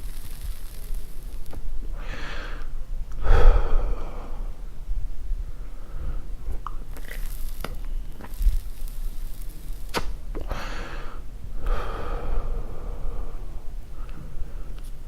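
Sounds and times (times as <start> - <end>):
cigarette clicks and crackles: 0.0 - 1.7, 6.6 - 10.5
breathy smoking puffs: 0.0 - 4.8, 5.4 - 15.0
low steady hum: 0.0 - 15.0.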